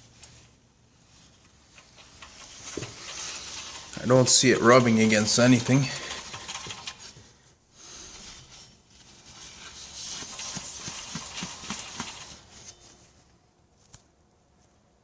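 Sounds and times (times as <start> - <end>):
spinning wheel hub clicking: 1.8 - 7.1.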